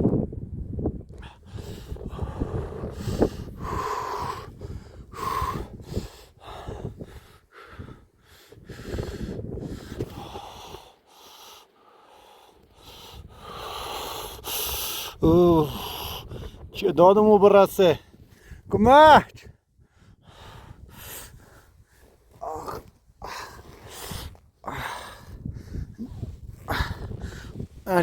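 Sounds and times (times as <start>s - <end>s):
man breathing hard: 1.1s - 16.7s, 19.7s - 27.8s.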